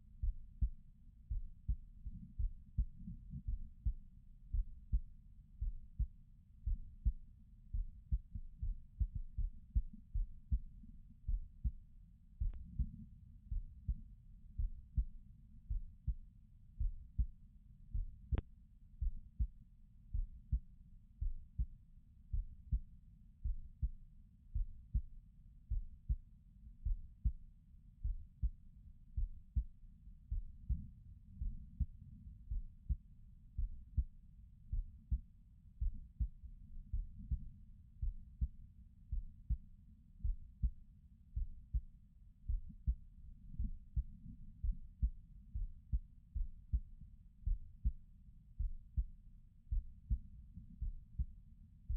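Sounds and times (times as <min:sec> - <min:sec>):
muffled heartbeat thumps: 0:00.2 - 0:11.8, 0:12.4 - 0:16.2, 0:16.8 - 0:21.7, 0:23.4 - 0:24.0, 0:24.6 - 0:25.1, 0:28.0 - 0:28.6, 0:30.3 - 0:33.0, 0:33.6 - 0:35.2, 0:35.8 - 0:38.5, 0:40.2 - 0:40.8, 0:41.4 - 0:41.9, 0:42.5 - 0:48.0, 0:48.6 - 0:51.3.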